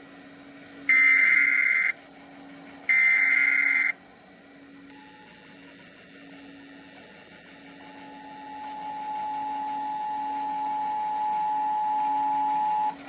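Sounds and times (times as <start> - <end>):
steady high alarm tone: 0.9 - 2.0, 2.8 - 4.0, 7.7 - 13.0.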